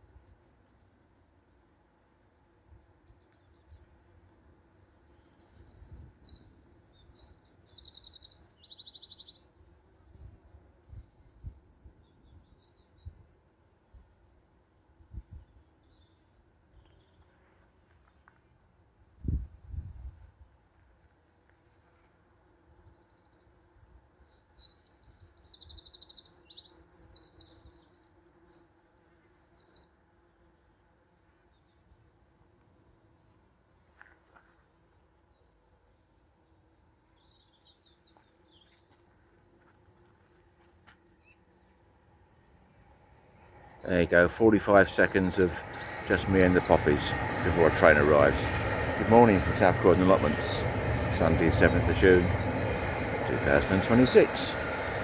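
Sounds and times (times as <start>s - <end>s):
faint low background hum: 41.2s - 55.0s
faint outdoor rumble: 41.8s - 55.0s
songbird trilling: 43.1s - 50.4s.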